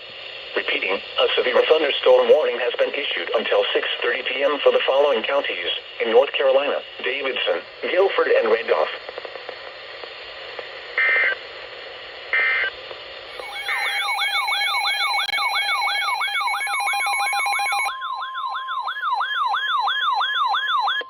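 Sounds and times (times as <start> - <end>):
digital data tones: 13.4 - 17.9
steady alert tone: 13.4 - 17.9.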